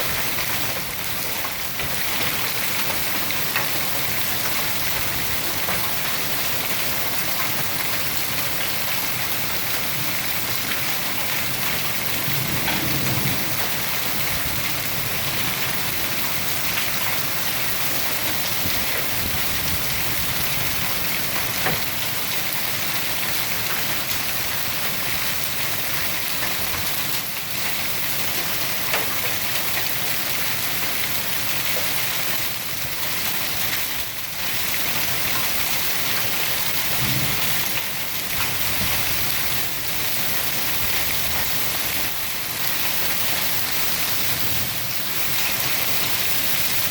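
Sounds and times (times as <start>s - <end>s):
heavy rain: 0.0s - 46.9s
hailstones pelting surfaces: 10.2s - 25.7s
low rumble: 11.9s - 15.7s.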